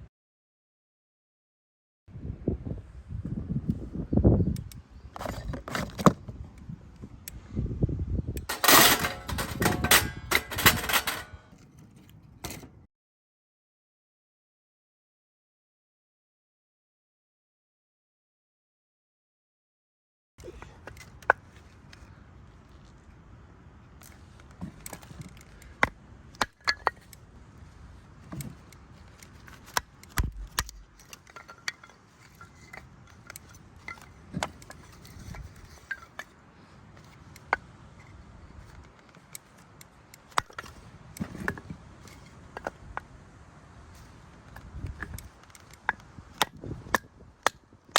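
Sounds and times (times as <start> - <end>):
camp gear clicks and clinks: 4.6 - 7.4, 8.4 - 12.8, 20.4 - 47.9.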